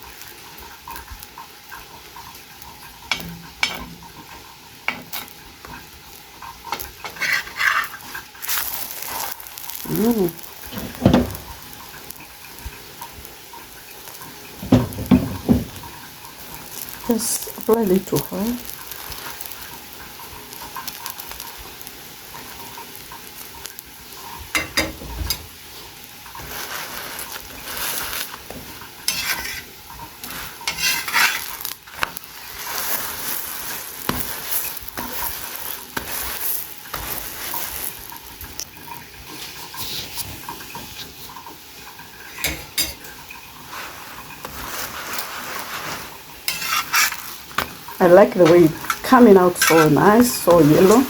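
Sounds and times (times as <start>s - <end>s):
batter sizzling in oil: 0.0s - 51.0s
spatula scraping a pan: 4.9s - 5.9s, 6.6s - 9.9s, 26.3s - 38.5s, 39.2s - 41.4s, 42.2s - 51.0s.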